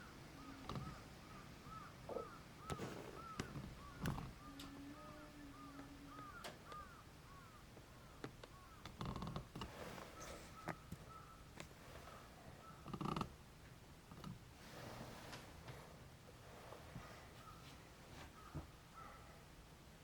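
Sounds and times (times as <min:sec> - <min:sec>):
bird calling: 0:00.0 - 0:09.0, 0:09.7 - 0:12.9, 0:17.4 - 0:19.4.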